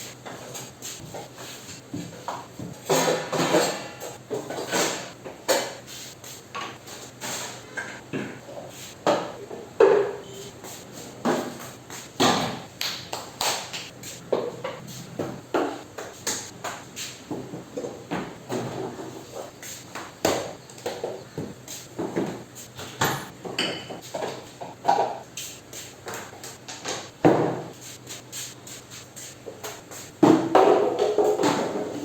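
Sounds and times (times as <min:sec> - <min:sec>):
kitchen utensils clattering: 0:02.8 - 0:05.8, 0:09.1 - 0:10.3, 0:22.0 - 0:25.2, 0:30.2 - 0:32.0.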